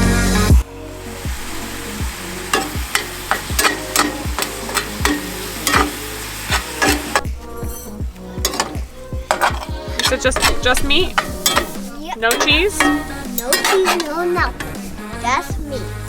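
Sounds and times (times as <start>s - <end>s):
background music with steady beat: 0.0s - 16.0s
meat sizzling in a pan: 0.6s - 14.1s.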